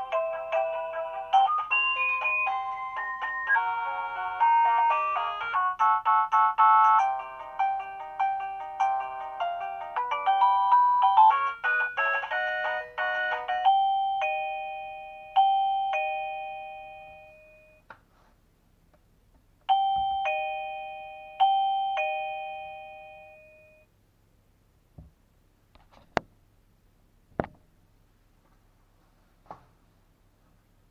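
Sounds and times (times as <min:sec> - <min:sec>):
electronic doorbell chime: 0:00.0 - 0:17.8, 0:19.7 - 0:23.9.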